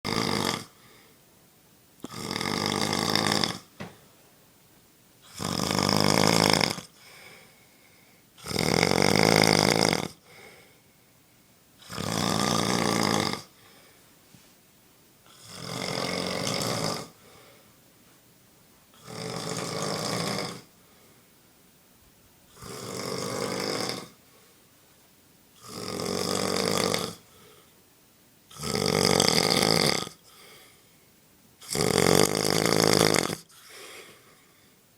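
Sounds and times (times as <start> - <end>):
person snoring: 0.1 - 1.0, 2.0 - 3.8, 5.2 - 7.5, 8.4 - 10.8, 11.8 - 13.9, 15.3 - 17.6, 18.9 - 20.7, 22.5 - 24.2, 25.6 - 27.7, 28.5 - 30.7, 31.6 - 34.4
quiet breaths: 0.1 - 34.9.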